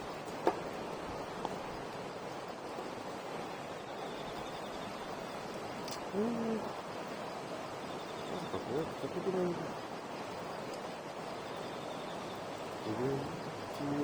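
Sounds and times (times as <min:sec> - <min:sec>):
fire popping: 0:00.0 - 0:02.4
campfire hissing: 0:00.0 - 0:14.0.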